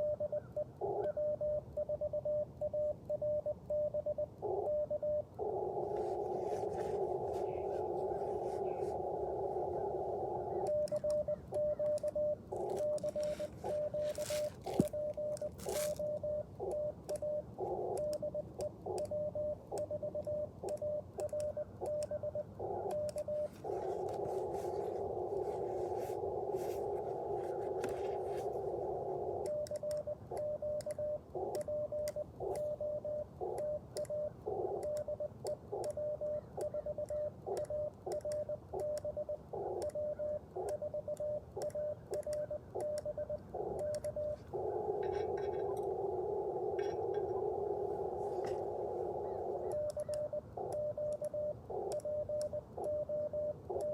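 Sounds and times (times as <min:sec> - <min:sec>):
morse code tone: 0:00.0 - 0:53.9
radio receive hiss: 0:05.4 - 0:18.2, 0:22.6 - 0:29.7, 0:43.5 - 0:53.9.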